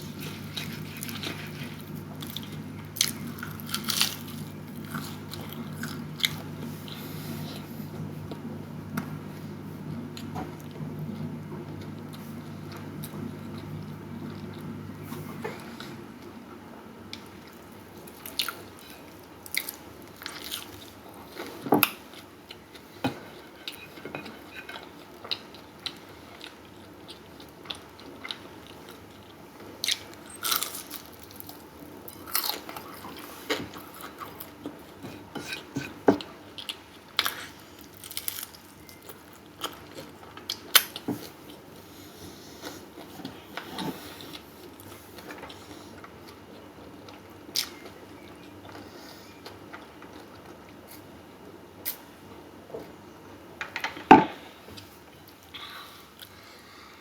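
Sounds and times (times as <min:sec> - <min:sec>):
person biting and chewing food: 0:00.1 - 0:07.8.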